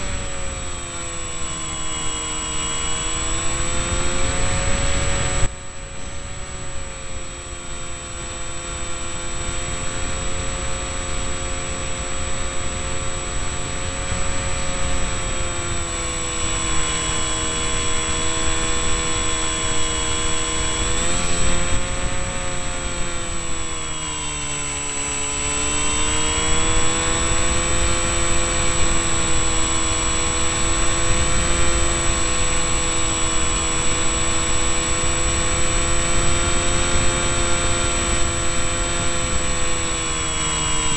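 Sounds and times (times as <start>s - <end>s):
electric motor and propeller whining: 0.0s - 40.9s
wind rush over microphone: 2.9s - 6.7s.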